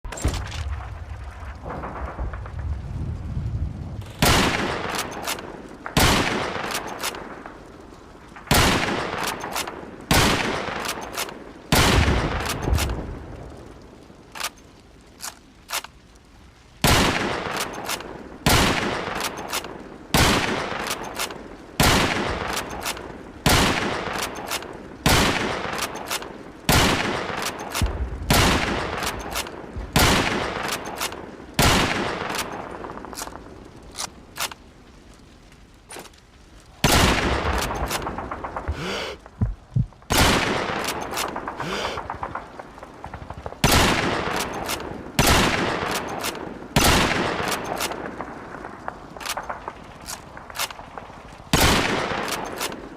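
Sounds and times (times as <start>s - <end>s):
rifle shots echoing: 4.1s - 7.6s, 8.5s - 13.1s, 16.8s - 33.4s, 36.8s - 39.2s, 40.1s - 49.8s, 51.5s - 52.9s
rifle bolt clicks: 14.3s - 14.6s, 15.2s - 16.0s, 32.2s - 34.6s, 49.2s - 50.9s.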